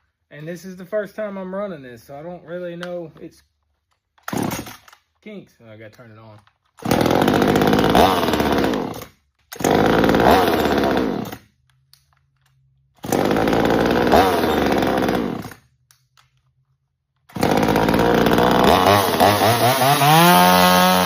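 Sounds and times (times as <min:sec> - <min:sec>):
chainsaw revving: 0:04.3 - 0:04.8, 0:06.8 - 0:11.5, 0:13.0 - 0:15.6, 0:17.3 - 0:21.0.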